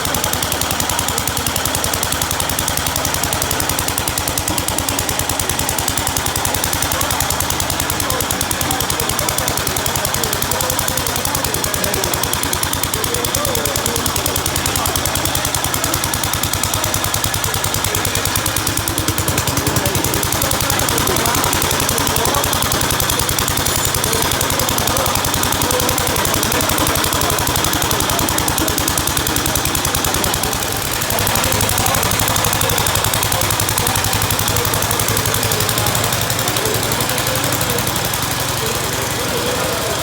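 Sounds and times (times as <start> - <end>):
tractor engine running: 0.0 - 40.0.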